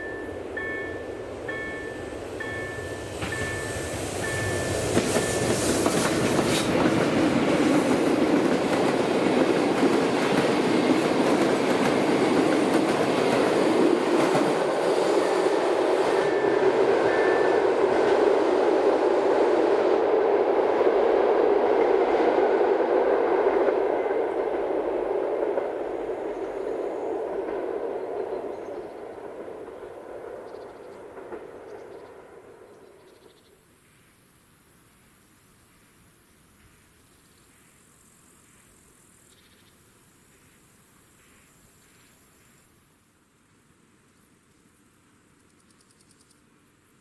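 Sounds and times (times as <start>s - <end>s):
level crossing warning beeps: 0.0s - 5.7s
train wheels clacking on rails: 0.0s - 33.3s.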